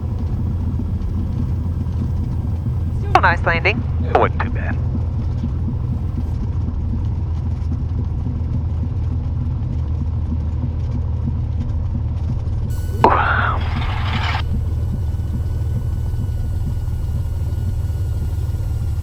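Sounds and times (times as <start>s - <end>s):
aircraft piston engine droning: 0.0s - 6.4s, 12.7s - 19.0s
brief noisy burst: 12.7s - 15.5s.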